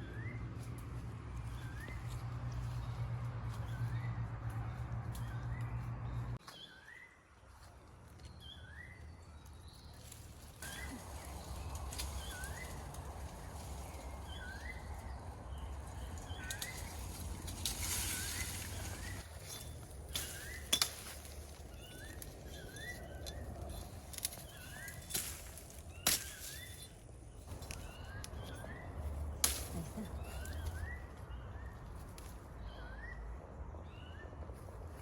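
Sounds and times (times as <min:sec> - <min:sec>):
bird chirping: 0:08.2 - 0:34.5.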